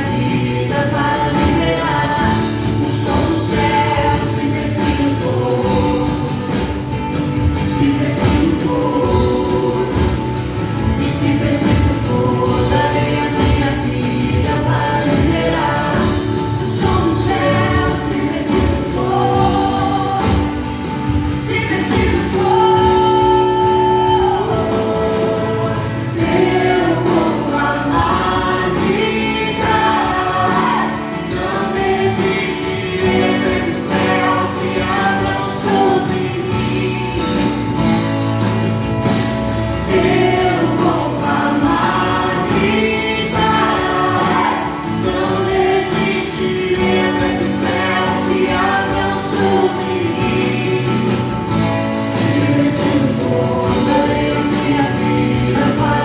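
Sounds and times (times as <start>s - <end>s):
choir singing gospel with band: 0.0s - 56.0s.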